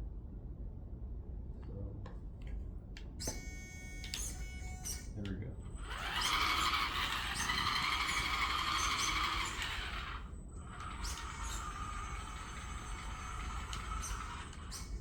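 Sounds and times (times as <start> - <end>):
electric drive motors whining: 3.2 - 15.0.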